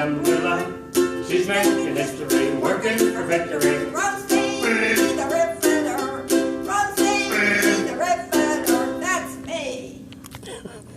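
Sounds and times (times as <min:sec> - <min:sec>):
ukulele strumming: 0:00.0 - 0:09.5.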